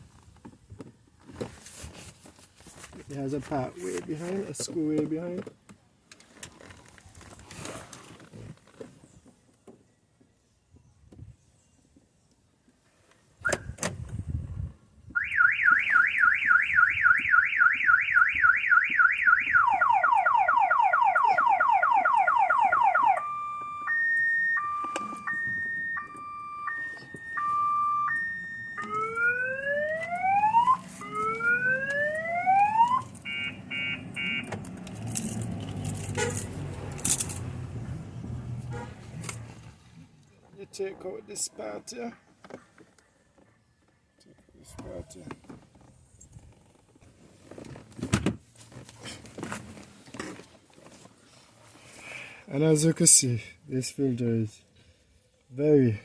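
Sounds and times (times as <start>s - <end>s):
car alarm siren: 15.2s - 34.6s.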